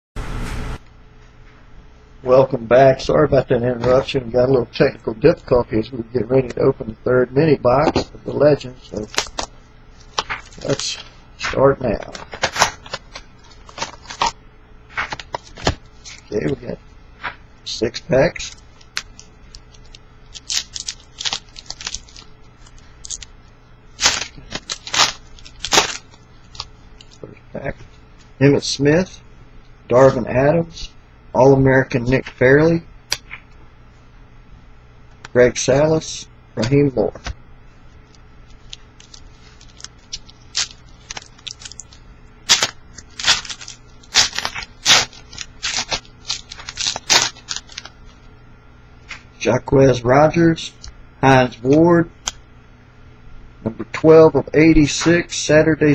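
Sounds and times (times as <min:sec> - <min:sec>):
foil wrapper crinkling: 0:08.8 - 0:16.6, 0:18.2 - 0:27.2, 0:38.0 - 0:48.2
cards being handled: 0:08.9 - 0:17.4, 0:18.4 - 0:23.3, 0:24.0 - 0:27.2, 0:38.1 - 0:47.9.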